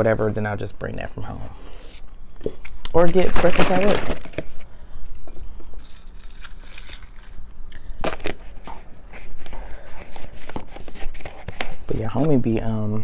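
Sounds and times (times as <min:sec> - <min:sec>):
person chewing cereal: 0:04.7 - 0:11.9.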